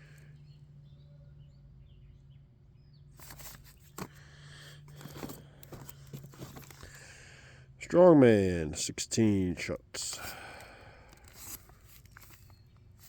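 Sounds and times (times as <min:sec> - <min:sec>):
steady low hum: 0:00.0 - 0:13.0
boxes handled knocks and rustles: 0:03.2 - 0:04.2, 0:04.8 - 0:07.0.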